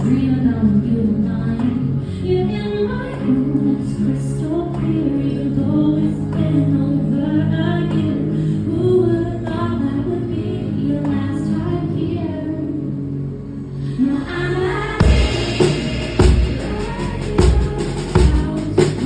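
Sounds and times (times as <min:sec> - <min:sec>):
woman singing a pop song: 0:00.0 - 0:13.0, 0:13.8 - 0:19.0
instrumental accompaniment: 0:15.0 - 0:19.0.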